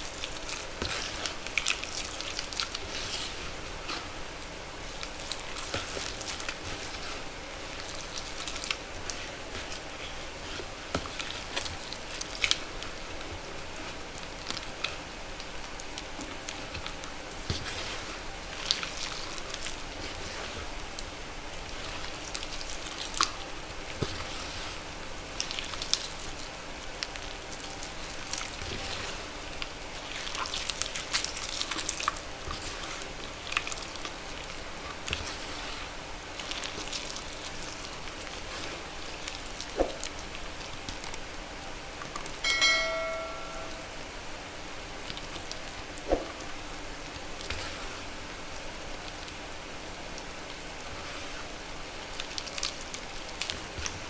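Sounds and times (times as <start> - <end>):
chalk crackling and popping in water: 0.0 - 41.3.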